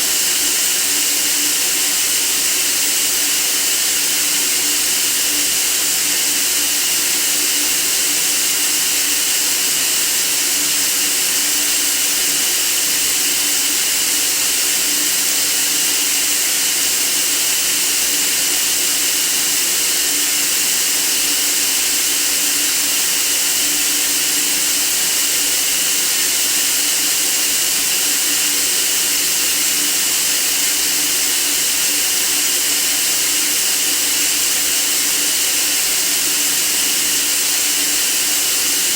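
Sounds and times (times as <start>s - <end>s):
steady white noise hiss: 0.0s - 16.2s.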